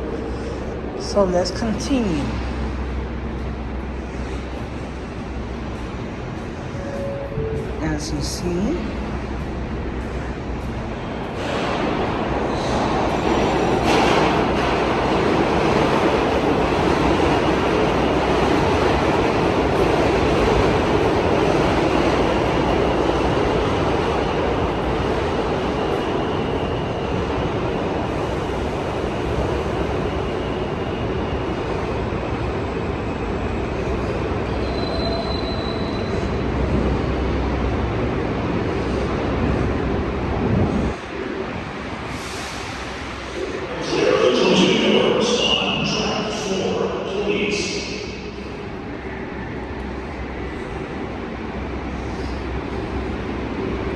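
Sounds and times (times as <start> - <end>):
subway train wheels rumbling on rail: 0.0 - 53.9
high wheel squeal: 34.5 - 36.3.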